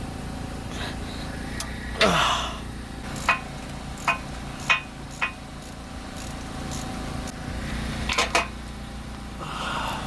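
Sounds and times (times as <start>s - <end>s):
steady low hum: 0.0s - 10.0s
ratcheting wrench clicking: 3.1s - 7.4s.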